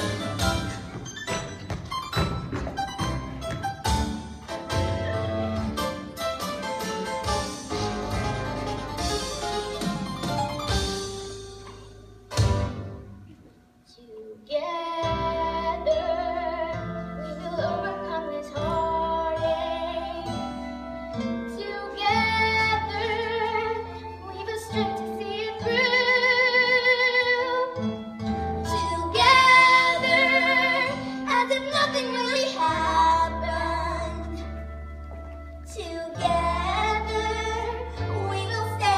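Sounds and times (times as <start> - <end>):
instrumental accompaniment: 0.0 - 13.8.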